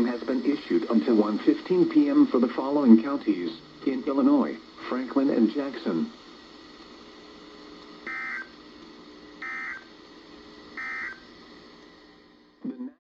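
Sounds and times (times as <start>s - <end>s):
faint hum and hiss: 0.0s - 13.0s
digital data bursts warbling: 8.0s - 8.5s, 9.4s - 9.9s, 10.8s - 11.3s.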